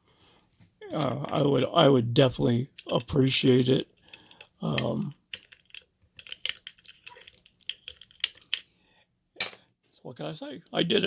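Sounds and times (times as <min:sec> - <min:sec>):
metallic clicks of lock picking: 0:04.1 - 0:08.6.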